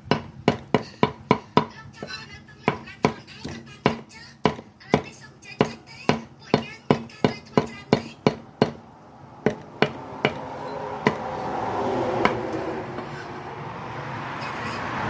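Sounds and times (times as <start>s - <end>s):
knife chopping on cutting board: 0.1s - 8.8s.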